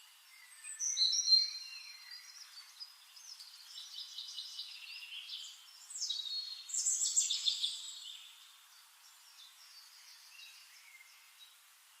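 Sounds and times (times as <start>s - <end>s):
birds chirping and whistling: 0.4s - 8.2s.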